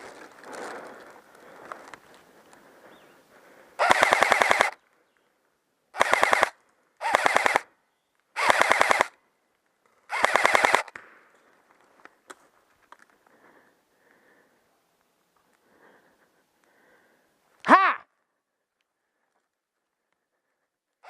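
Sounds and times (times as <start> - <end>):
airsoft gun full-auto bursts: 3.8 - 4.8, 5.9 - 7.7, 8.4 - 9.2, 10.1 - 11.0.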